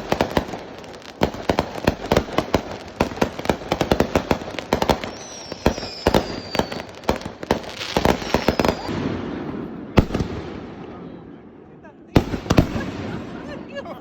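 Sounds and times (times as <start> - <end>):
fireworks bangs and crackle: 0.0 - 14.0
fireworks whistles falling in pitch: 4.8 - 7.2, 7.8 - 9.0.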